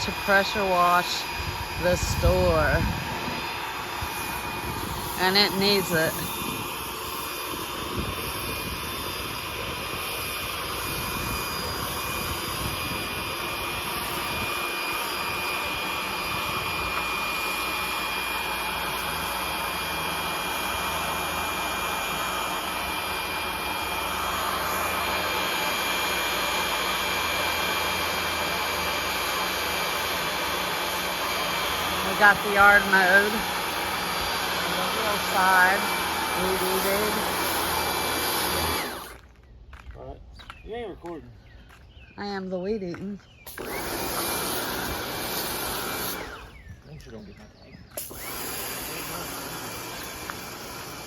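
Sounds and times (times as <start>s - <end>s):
pressure washer hissing: 0.0s - 39.2s, 43.5s - 46.6s, 48.0s - 51.0s.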